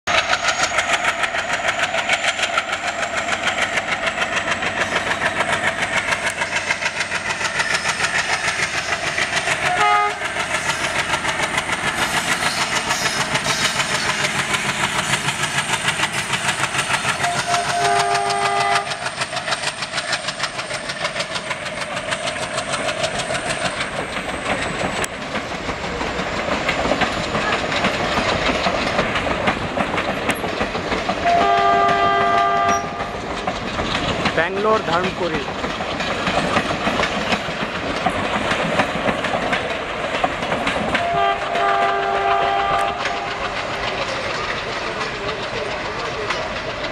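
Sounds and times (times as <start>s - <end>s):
diesel locomotive engine chugging: 0.1s - 46.9s
wheels clacking on track: 0.1s - 46.9s
train horn: 9.7s - 10.2s, 17.2s - 19.0s, 31.2s - 33.0s, 41.0s - 43.3s.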